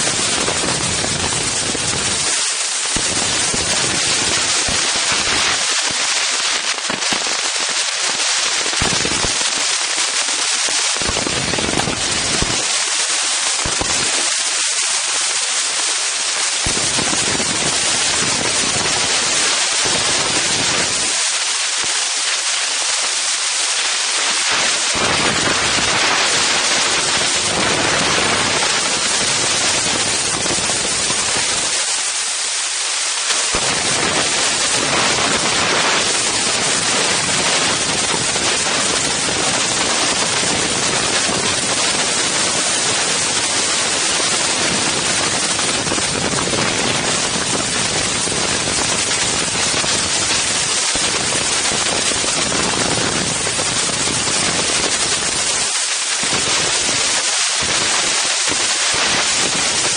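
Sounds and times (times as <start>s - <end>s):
wind buffeting microphone: 0.0s - 2.4s, 11.0s - 12.7s, 33.5s - 54.5s.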